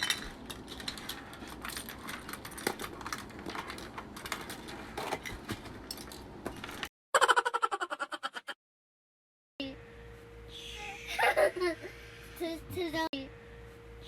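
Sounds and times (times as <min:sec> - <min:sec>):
plastic objects clicking and rattling: 0:00.0 - 0:06.9.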